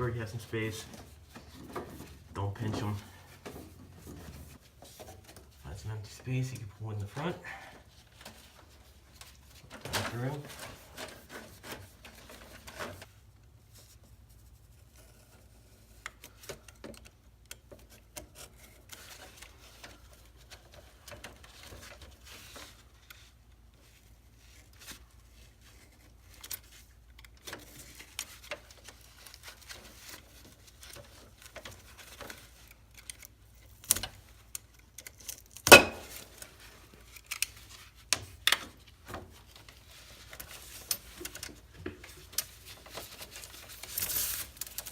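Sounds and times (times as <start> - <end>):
cable rustling and scraping: 0.0 - 44.9.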